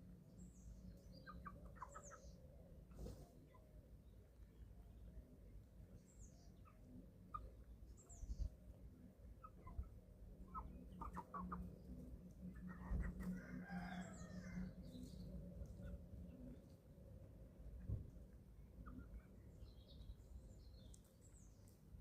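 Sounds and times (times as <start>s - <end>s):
chickens clucking and peeping: 0.0s - 22.0s.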